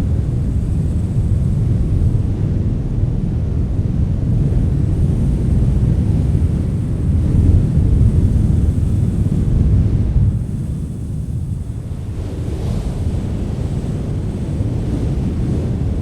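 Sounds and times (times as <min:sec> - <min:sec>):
wind blowing: 0:00.0 - 0:16.0.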